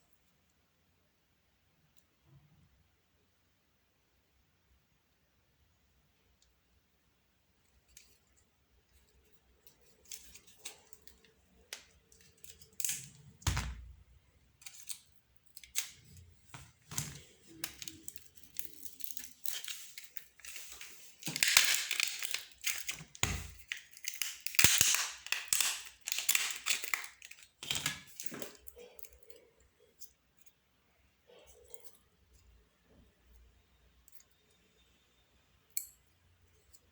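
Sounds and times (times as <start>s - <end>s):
plastic parts clicking and snapping: 9.6s - 13.9s, 14.6s - 29.3s.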